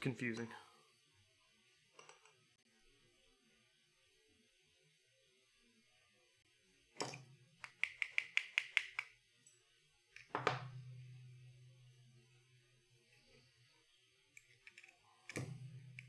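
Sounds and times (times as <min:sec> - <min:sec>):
sharp metal clicks: 0:07.1 - 0:09.1
low ringing hum: 0:10.6 - 0:14.3.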